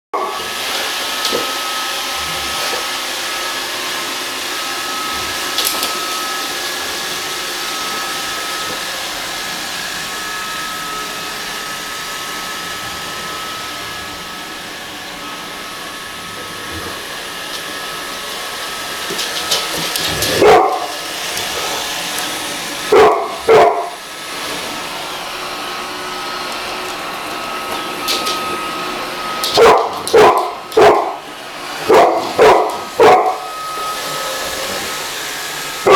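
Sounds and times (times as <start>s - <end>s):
dog barking: 20.3s - 21.0s, 22.9s - 24.0s, 29.5s - 31.2s, 31.8s - 33.4s.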